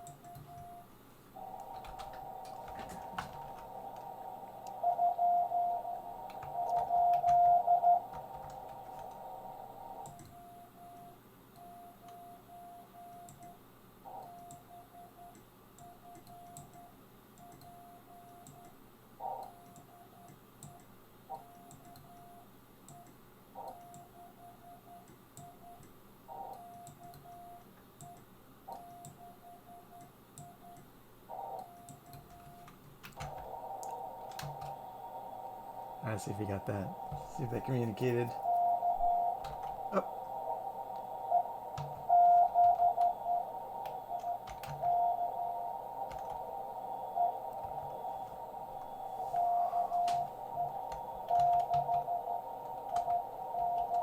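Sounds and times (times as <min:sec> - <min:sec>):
morse code tones: 0:00.0 - 0:18.7, 0:19.4 - 0:30.8, 0:31.4 - 0:54.0
radio receiver hiss: 0:01.3 - 0:05.1, 0:05.7 - 0:10.2, 0:33.2 - 0:54.0.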